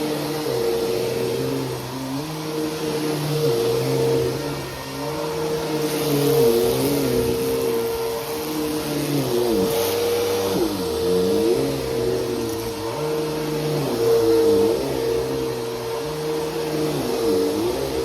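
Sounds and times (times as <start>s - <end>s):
vacuum cleaner motor whine: 0.0s - 18.0s.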